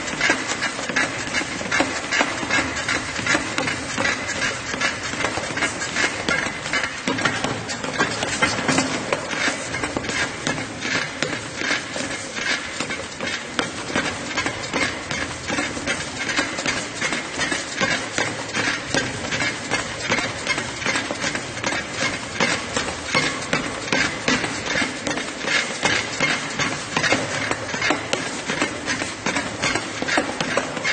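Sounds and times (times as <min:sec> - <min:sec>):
footfalls on treadmill belt: 0:00.0 - 0:30.9
treadmill running noise: 0:00.0 - 0:30.9.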